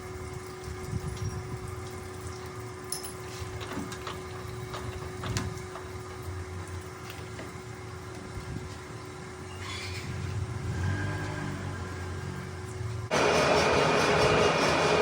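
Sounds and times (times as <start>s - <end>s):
metal lathe motor hum: 11.2s - 15.0s.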